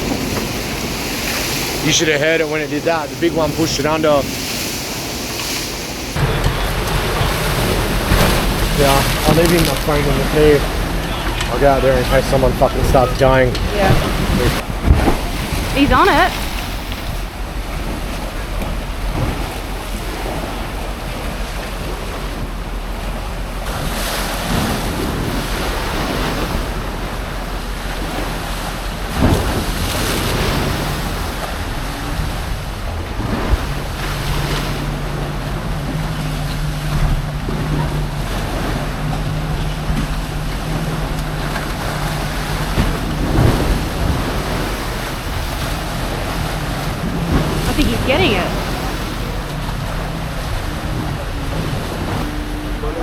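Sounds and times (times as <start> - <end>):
low steady hum: 0.0 - 53.0
waves breaking: 0.0 - 53.0
wind buffeting microphone: 0.0 - 53.0
loud knocks: 6.2 - 11.5, 12.8 - 25.8.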